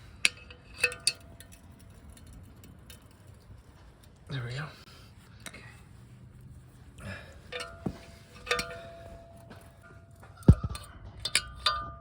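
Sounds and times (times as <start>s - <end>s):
metal tools clinking on steel: 0.1s - 3.4s, 7.4s - 12.0s
heavy thud: 7.7s - 8.2s.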